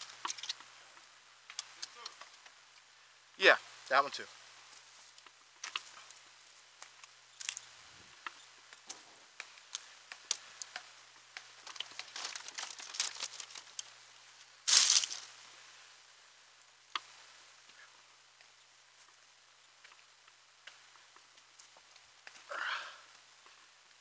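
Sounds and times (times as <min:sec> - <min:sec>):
dry brush snapping and crackling: 0:00.0 - 0:02.9, 0:04.7 - 0:15.4, 0:19.8 - 0:23.6
brush rustling crash: 0:11.5 - 0:15.4.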